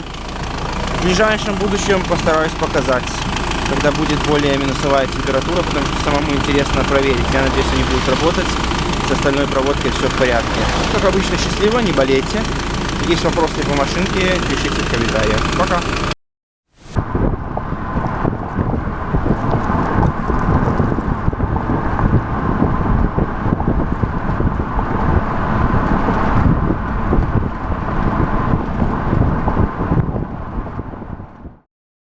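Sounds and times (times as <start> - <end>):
car running: 0.0 - 16.2, 16.9 - 31.6
wind buffeting microphone: 17.0 - 31.6.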